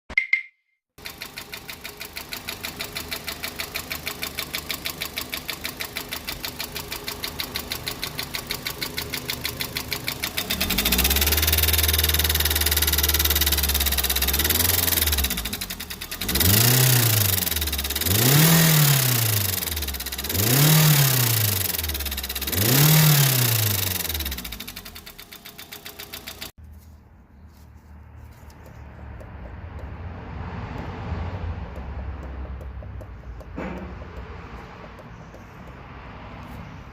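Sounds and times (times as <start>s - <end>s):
car engine idling with knocking tick: 1.0s - 26.5s, 28.6s - 29.9s, 30.7s - 35.9s
car engine revving: 2.0s - 26.5s.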